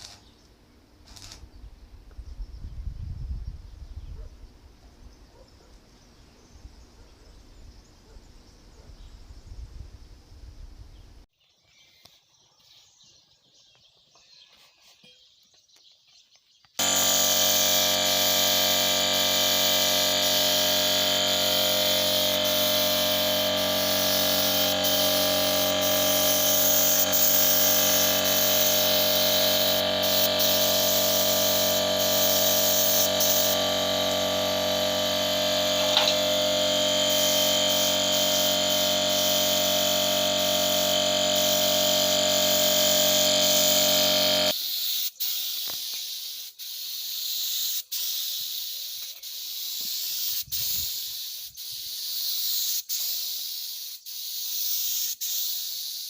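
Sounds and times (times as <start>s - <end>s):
welding arc hissing: 0.0s - 0.2s, 1.1s - 1.4s, 16.8s - 56.0s.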